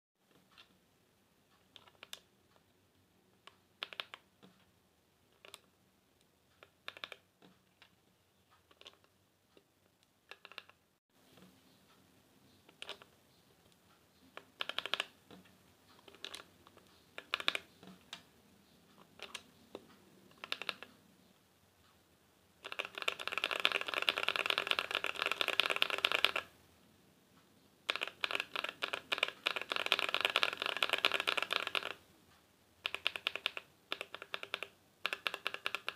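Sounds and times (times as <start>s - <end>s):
mechanical keyboard typing: 3.4s - 4.6s, 5.3s - 5.7s, 6.6s - 7.9s, 8.6s - 10.8s, 12.7s - 13.1s, 14.3s - 15.4s, 16.0s - 18.3s, 19.0s - 21.0s, 22.6s - 26.5s, 27.8s - 32.0s, 32.8s - 35.9s.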